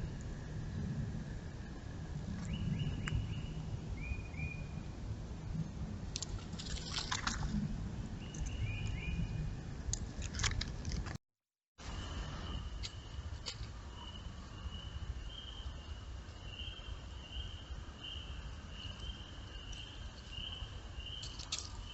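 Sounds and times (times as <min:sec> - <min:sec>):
steady low rumble: 0:00.0 - 0:11.2
clicks and rustles: 0:09.9 - 0:11.2, 0:21.2 - 0:21.9.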